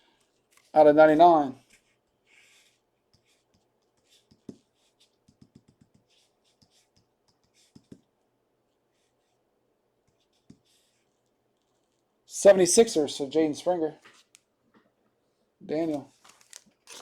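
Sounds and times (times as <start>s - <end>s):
faint clicks and taps: 3.1s - 8.1s, 10.0s - 12.0s.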